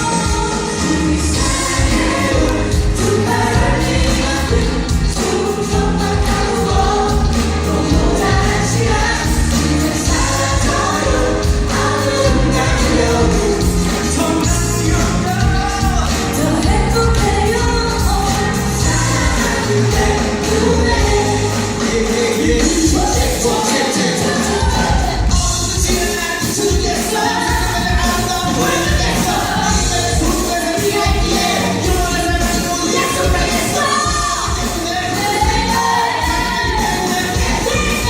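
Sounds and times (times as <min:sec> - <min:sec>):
bass line: 0:00.0 - 0:23.4, 0:27.3 - 0:30.4
live band with singing: 0:00.0 - 0:38.0.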